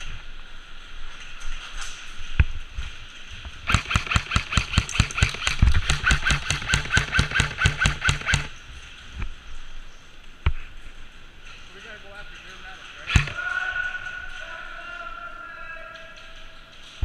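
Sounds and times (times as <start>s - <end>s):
airsoft gun rapid fire: 3.6s - 8.6s, 13.0s - 13.4s.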